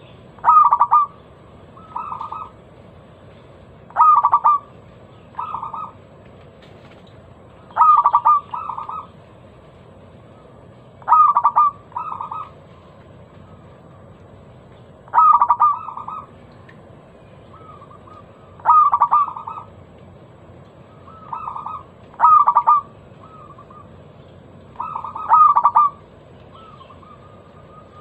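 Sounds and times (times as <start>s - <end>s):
dove cooing: 0.4s - 1.2s, 1.8s - 2.6s, 3.9s - 4.7s, 5.3s - 6.0s, 7.7s - 9.2s, 11.0s - 13.8s, 15.1s - 16.4s, 17.5s - 19.8s, 20.9s - 24.0s, 24.8s - 28.0s.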